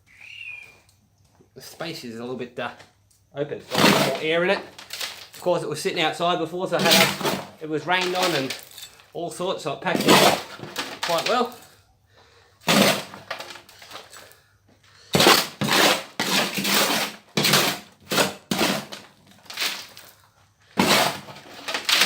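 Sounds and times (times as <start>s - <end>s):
trowel scraping dry dirt: 3.6s - 5.3s, 6.8s - 8.8s, 9.9s - 11.6s, 12.6s - 14.1s, 15.1s - 20.1s, 20.8s - 22.0s.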